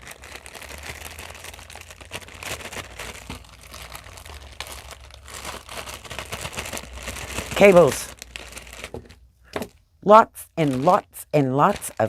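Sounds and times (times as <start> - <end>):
packaging rustling and crinkling: 0.0 - 9.8, 10.4 - 12.0.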